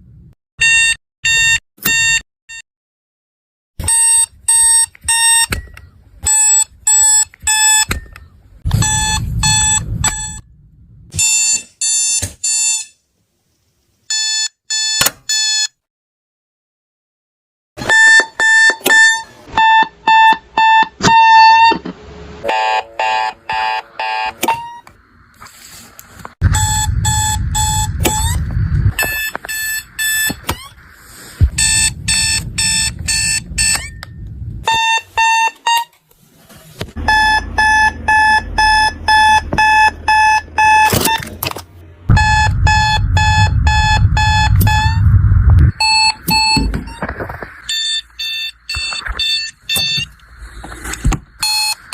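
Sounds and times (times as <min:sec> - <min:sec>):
alarm clock beeping: 0:03.8 - 0:10.4, 0:17.9 - 0:21.8, 0:22.4 - 0:24.4, 0:26.4 - 0:30.5, 0:31.4 - 0:34.0, 0:37.0 - 0:41.2, 0:42.1 - 0:47.0, 0:47.7 - 0:50.1
loud low buzz: 0:26.4 - 0:30.3, 0:31.3 - 0:34.7, 0:42.0 - 0:46.5.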